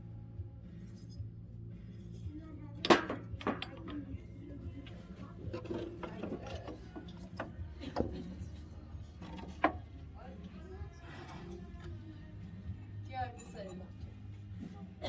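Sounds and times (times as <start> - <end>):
background music: 0.0 - 15.0
tableware clinking: 2.9 - 4.0.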